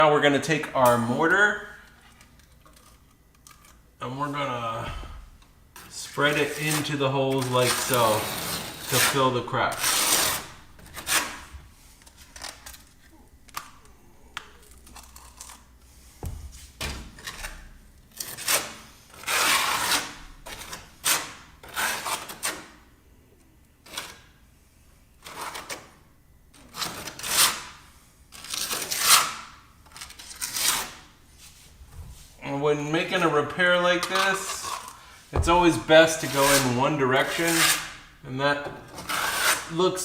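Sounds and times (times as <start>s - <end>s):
hand tool scraping mortar: 5.8s - 11.5s, 18.2s - 22.7s, 25.2s - 25.9s, 26.7s - 27.7s, 28.4s - 29.4s, 30.0s - 31.0s, 34.0s - 38.1s, 38.8s - 40.0s.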